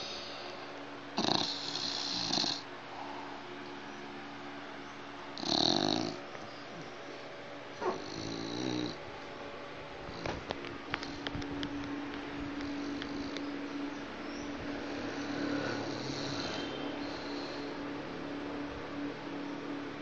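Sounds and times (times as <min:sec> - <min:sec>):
dog snoring: 0:01.2 - 0:02.7, 0:05.4 - 0:06.2, 0:07.8 - 0:09.0, 0:14.8 - 0:17.7.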